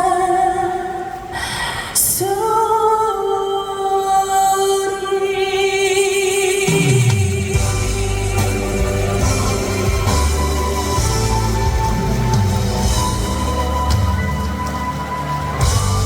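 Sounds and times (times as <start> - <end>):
band accompaniment: 6.7 - 16.0.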